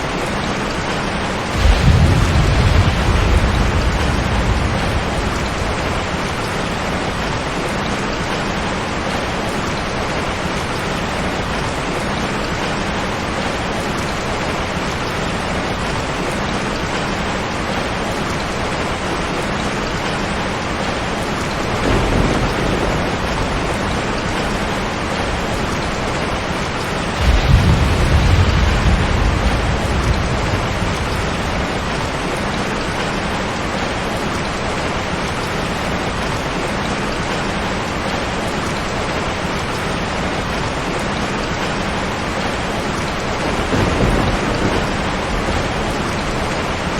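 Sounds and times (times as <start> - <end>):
heavy rain on a tin roof: 0.0 - 46.9
thunder rumble: 1.4 - 8.4, 20.3 - 33.9, 42.2 - 46.9.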